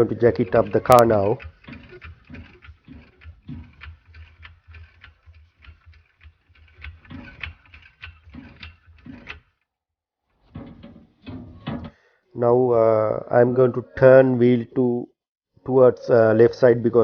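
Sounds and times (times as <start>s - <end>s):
car jack clicking: 0.0s - 9.6s.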